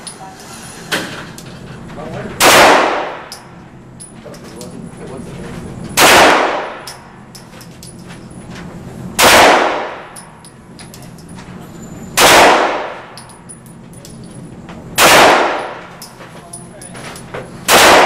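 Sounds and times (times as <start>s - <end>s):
pistol shots with echo: 2.4s - 3.4s, 6.0s - 7.0s, 9.2s - 10.2s, 12.2s - 13.2s, 15.0s - 15.9s, 17.7s - 18.0s.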